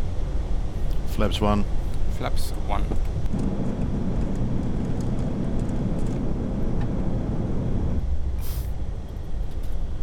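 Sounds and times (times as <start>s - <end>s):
aircraft cockpit rumble: 0.0s - 10.0s
short high hiss: 8.4s - 8.8s.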